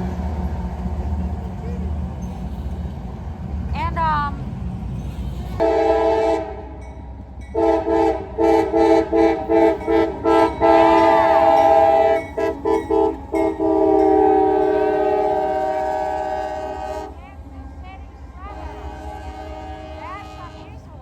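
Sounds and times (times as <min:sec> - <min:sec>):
locomotive air horn blasts: 0:05.5 - 0:06.8, 0:07.5 - 0:17.2, 0:18.5 - 0:20.9.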